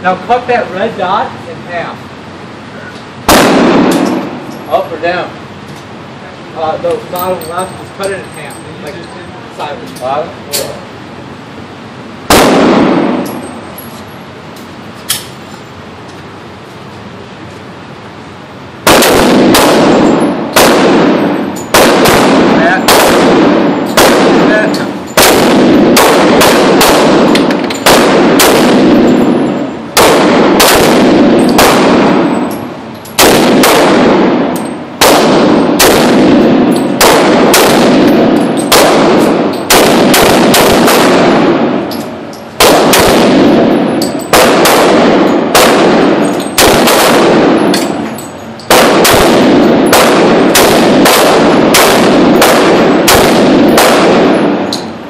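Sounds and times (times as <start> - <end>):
gunshots: 3.2 - 4.9, 12.3 - 13.5, 18.8 - 32.5, 33.2 - 48.1, 48.7 - 54.9.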